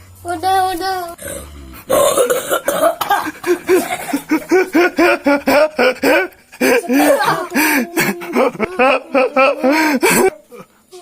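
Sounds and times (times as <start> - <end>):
person laughing hard: 3.4 - 10.4.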